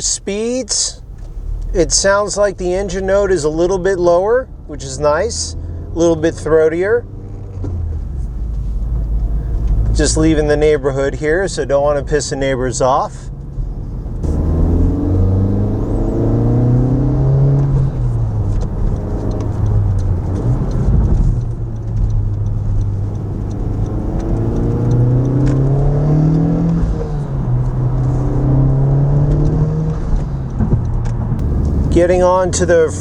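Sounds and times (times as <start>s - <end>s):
car engine revving through gears: 1.0s - 2.0s, 7.0s - 10.7s, 13.8s - 33.0s.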